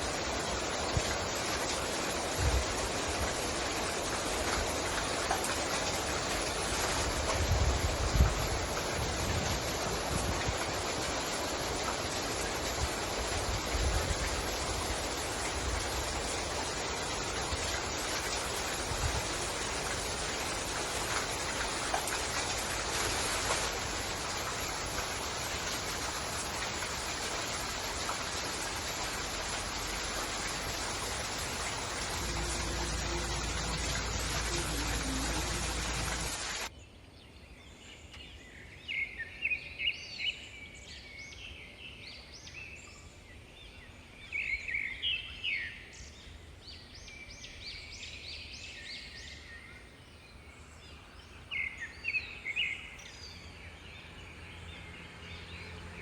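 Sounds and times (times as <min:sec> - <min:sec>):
birds chirping: 0:29.2 - 0:36.7
deep rumble: 0:31.7 - 0:36.5.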